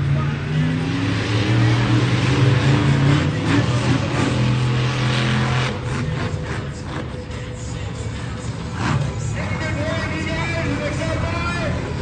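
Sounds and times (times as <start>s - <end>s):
monster truck engine running loudly: 0.0s - 12.0s.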